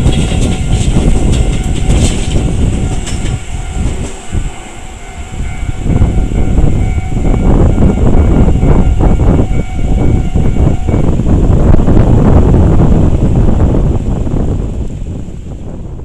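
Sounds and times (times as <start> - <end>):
wheels clacking over rail joints: 0.0 - 8.6
train rumbling past: 0.0 - 16.0.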